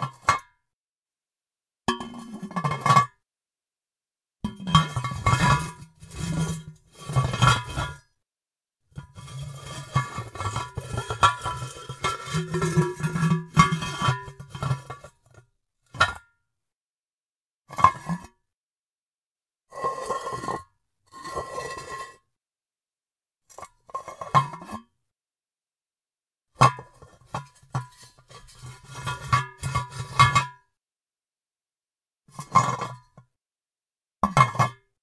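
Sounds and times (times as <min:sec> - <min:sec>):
ceramic jar scraping across surface: 0:01.9 - 0:03.2, 0:04.5 - 0:08.2, 0:09.0 - 0:16.2, 0:19.7 - 0:22.3, 0:23.5 - 0:25.0, 0:26.7 - 0:30.4, 0:32.3 - 0:33.2.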